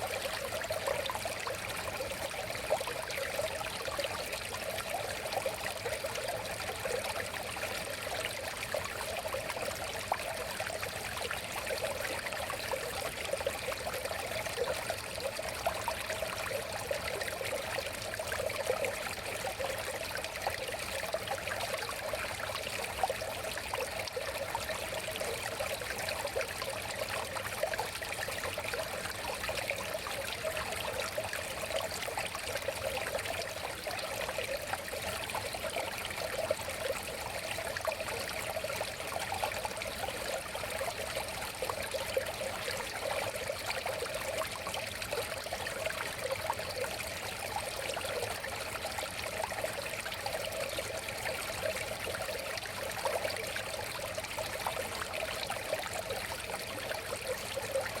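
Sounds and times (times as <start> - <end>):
river water babbling: 0.0 - 58.0
small splashes and trickles: 0.0 - 58.0.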